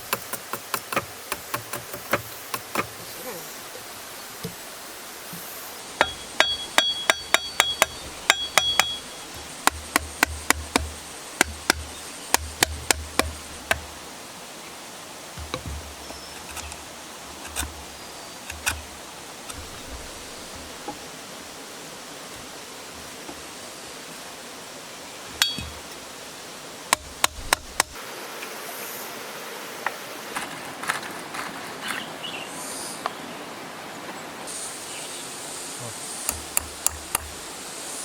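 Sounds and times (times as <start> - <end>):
hammer tapping: 0.0 - 3.0, 6.0 - 13.9, 18.5 - 18.9, 26.9 - 28.0, 36.3 - 37.4.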